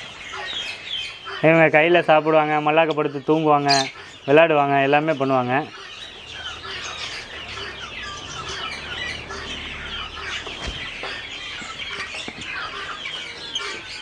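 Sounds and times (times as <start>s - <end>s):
parrots chattering: 3.0s - 4.4s, 5.1s - 14.0s.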